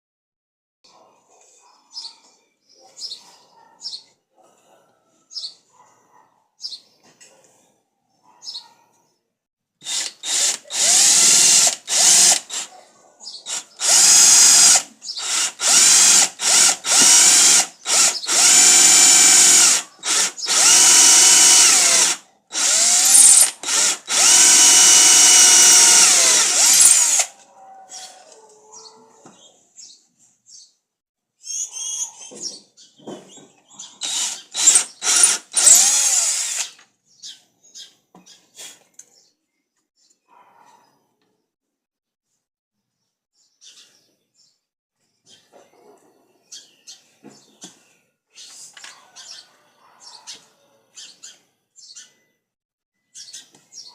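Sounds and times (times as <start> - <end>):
electric drill whining: 9.8 - 12.7, 13.5 - 27.3, 34.0 - 36.8.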